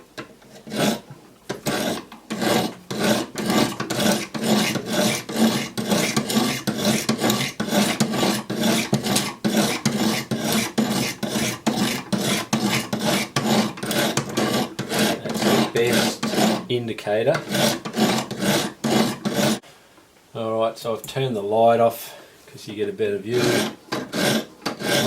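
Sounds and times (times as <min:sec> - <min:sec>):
sharpening stone rasping on blade: 0:00.6 - 0:01.0, 0:01.6 - 0:16.7, 0:17.4 - 0:19.6, 0:23.4 - 0:25.0.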